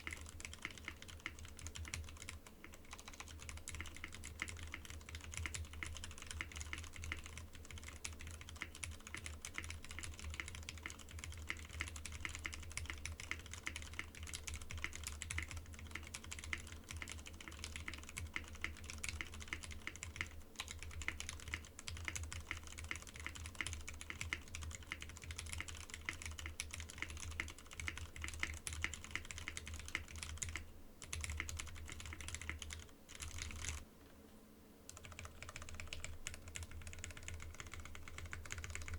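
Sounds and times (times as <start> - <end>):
typing on mechanical keyboard: 0.0 - 33.8, 34.9 - 38.9.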